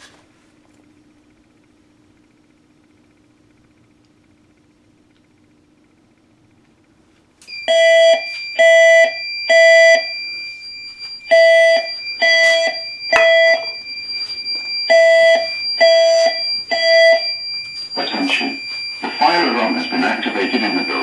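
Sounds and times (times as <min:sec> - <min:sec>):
fire alarm horns blasting: 0:07.5 - 0:21.0
steady high-pitched tone: 0:09.6 - 0:21.0.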